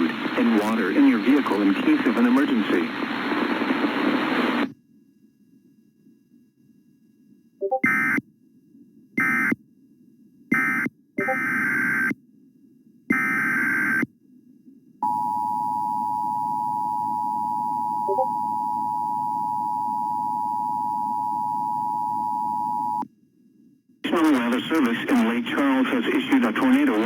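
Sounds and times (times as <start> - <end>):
warbling modem data bursts: 0.0 - 4.7.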